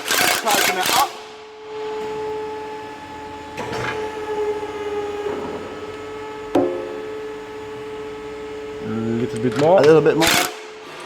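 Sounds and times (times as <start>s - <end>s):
steady hum: 1.1s - 10.8s.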